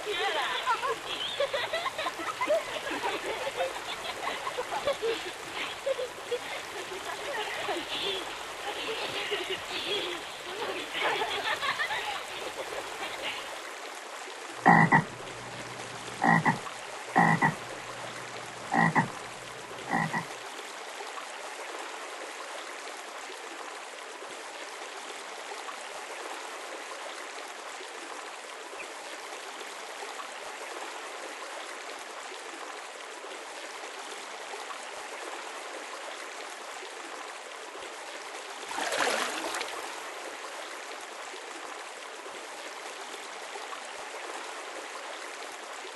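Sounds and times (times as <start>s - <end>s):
small waterfall splashing: 0.0s - 45.9s
frog croaking: 14.6s - 20.3s.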